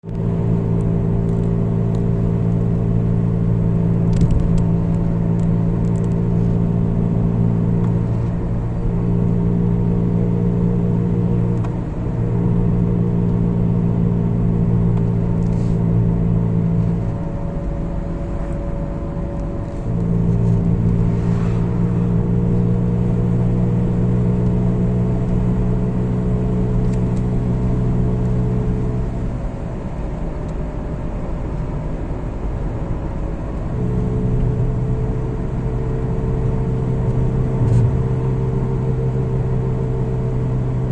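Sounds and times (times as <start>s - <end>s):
car running gear droning hum: 0.0s - 40.9s.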